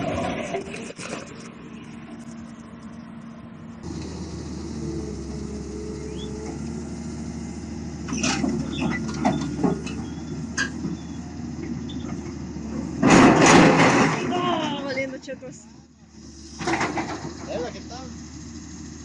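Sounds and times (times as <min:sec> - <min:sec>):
machine engine running: 0:00.0 - 0:12.7
short squeaks: 0:08.1 - 0:11.2, 0:11.8 - 0:12.2.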